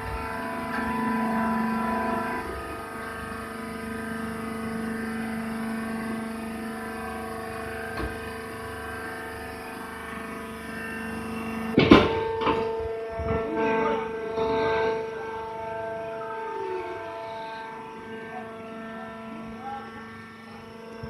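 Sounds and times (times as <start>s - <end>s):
hydraulic motor and pump humming: 0.0s - 21.0s
loud metal clanks: 11.8s - 13.5s.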